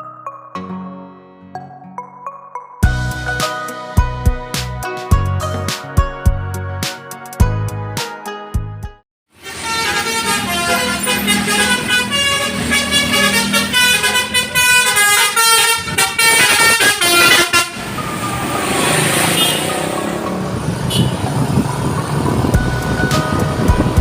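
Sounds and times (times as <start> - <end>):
musical air horn tune: 9.4 - 18.3, 18.9 - 19.8
bus passing: 9.4 - 24.0.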